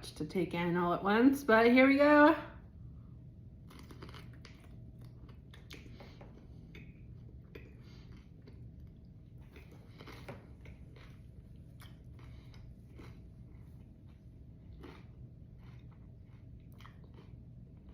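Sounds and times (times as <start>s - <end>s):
crunchy chewing: 3.6s - 17.9s.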